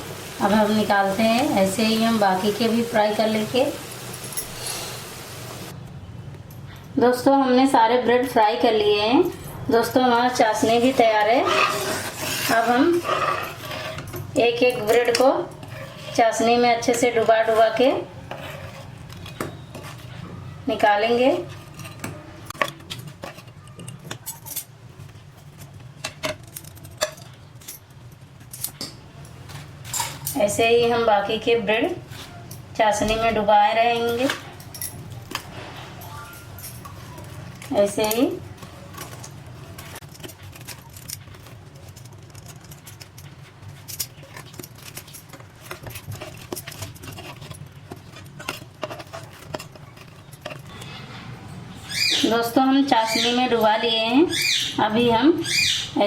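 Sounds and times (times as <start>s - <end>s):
metal utensils clinking on dishes: 29.8s - 30.6s.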